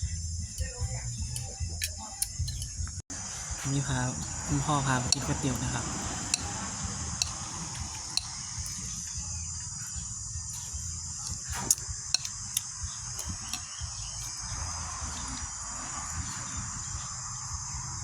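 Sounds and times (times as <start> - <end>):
insects chirring: 0.0 - 18.0
sharp clicks and clinks: 1.3 - 2.8, 11.2 - 14.3.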